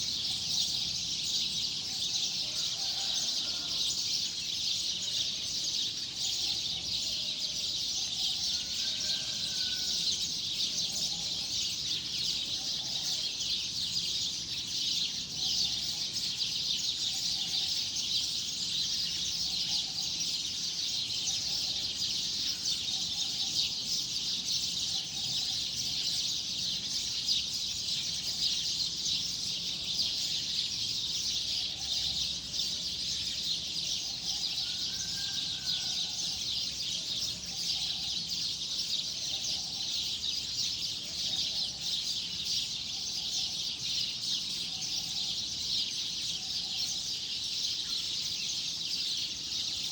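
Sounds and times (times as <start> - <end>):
many small birds chirping: 0.0 - 49.9.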